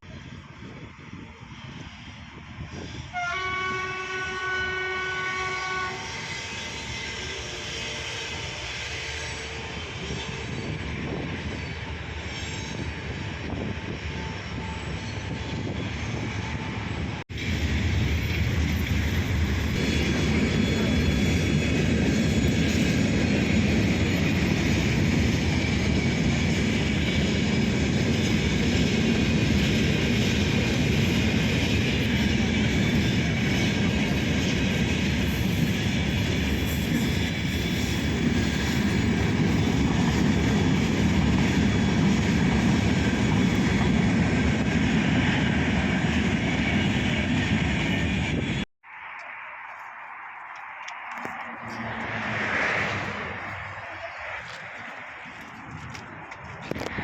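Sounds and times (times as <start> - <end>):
train running on rails: 0.0 - 57.0
train horn blast: 3.1 - 10.5.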